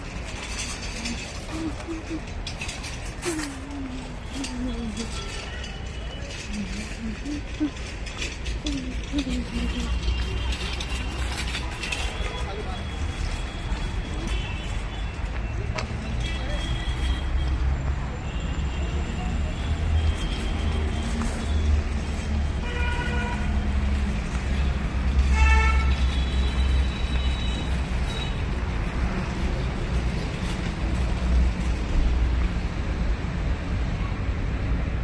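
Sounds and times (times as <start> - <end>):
low rumble of traffic: 0.0 - 35.0
vehicle horns honking: 22.6 - 23.6, 25.2 - 28.4.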